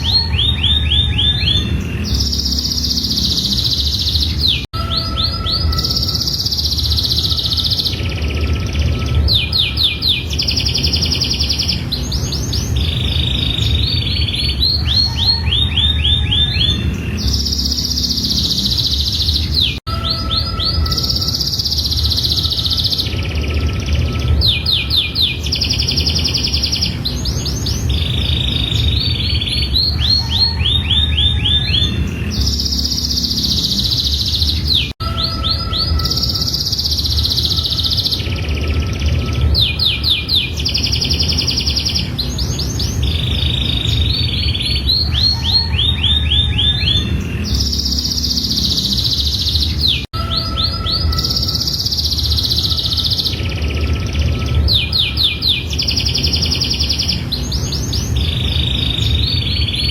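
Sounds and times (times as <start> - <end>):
canary singing trills: 0.0 - 59.9.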